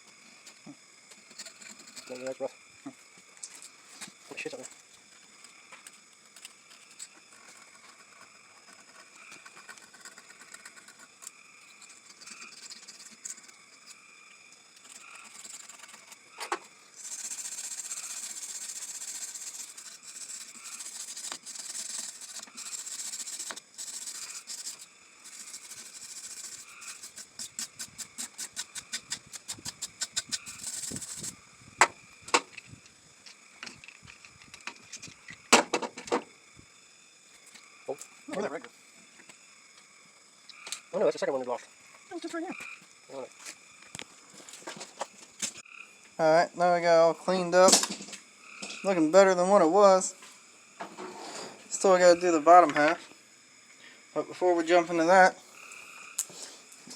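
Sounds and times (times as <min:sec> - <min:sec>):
metal scraping: 0:14.8 - 0:31.4.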